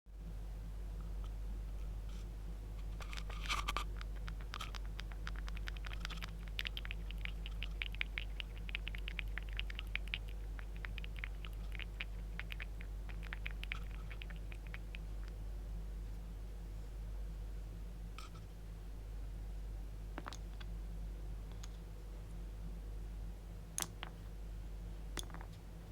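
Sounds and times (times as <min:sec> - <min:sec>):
steady low hum: 0:00.1 - 0:25.9
mechanical keyboard typing: 0:03.1 - 0:12.6.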